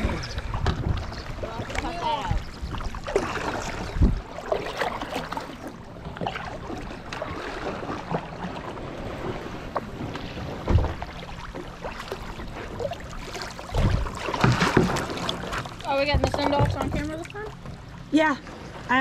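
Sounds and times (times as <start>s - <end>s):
water moving around kayaks: 0.0s - 19.0s
small knocks and splashes: 9.7s - 17.8s
low thump: 10.6s - 11.1s.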